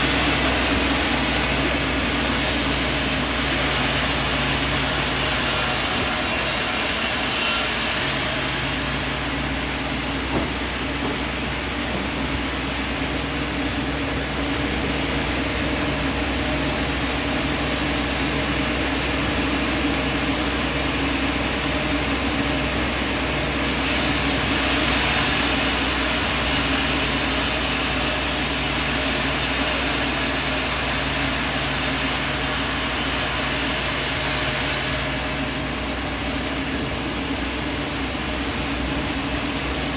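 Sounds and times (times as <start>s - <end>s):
bright hiss: 0.0s - 13.5s, 23.5s - 39.9s
sawmill machinery drone: 0.0s - 39.9s.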